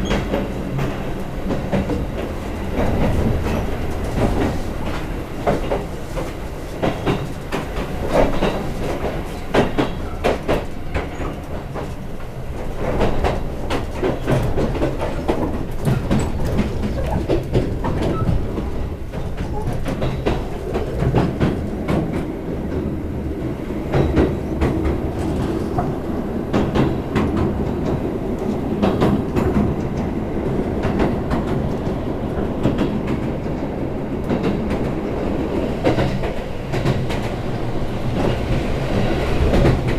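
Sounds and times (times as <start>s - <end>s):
train interior rumble: 0.0s - 39.9s
wheels clacking over rail joints: 0.0s - 39.9s.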